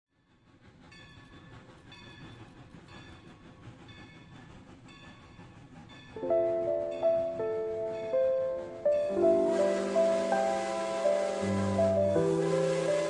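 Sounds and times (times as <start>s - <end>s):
train rumbling: 0.2s - 13.0s.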